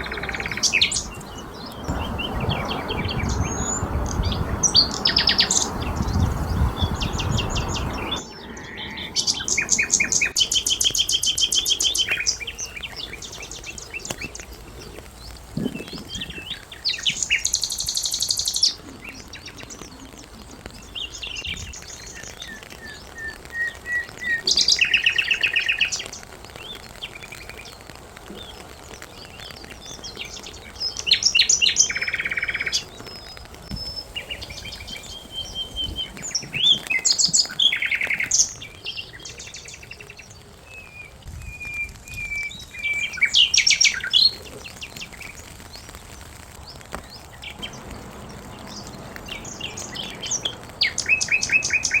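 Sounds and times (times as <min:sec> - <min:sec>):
low rushing noise: 0:00.0 - 0:11.8, 0:45.6 - 0:52.0
songbirds trilling and chirping: 0:00.0 - 0:52.0.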